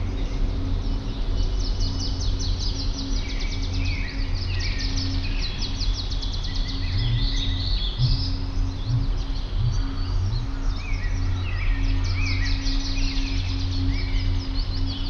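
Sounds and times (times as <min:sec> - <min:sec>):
songbirds chirping and singing: 0:00.0 - 0:15.0
steady low hum: 0:00.0 - 0:15.0
fast bird trill: 0:05.9 - 0:15.0.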